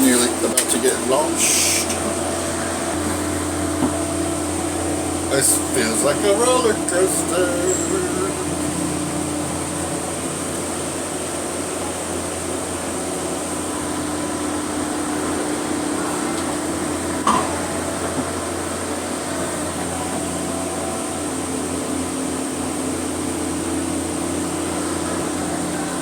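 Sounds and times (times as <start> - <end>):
mechanical hum of machinery: 0.0 - 26.0.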